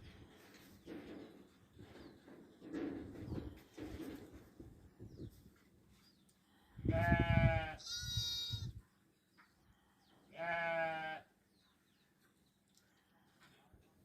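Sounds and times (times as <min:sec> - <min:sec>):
goats bleating: 0:06.9 - 0:08.7, 0:10.3 - 0:11.2.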